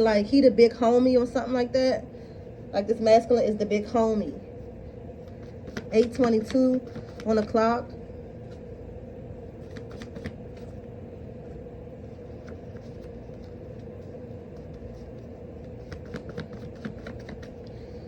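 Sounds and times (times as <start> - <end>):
low room hum: 0.0 - 18.0
cards being shuffled: 5.2 - 7.6, 9.6 - 10.8, 12.0 - 17.8.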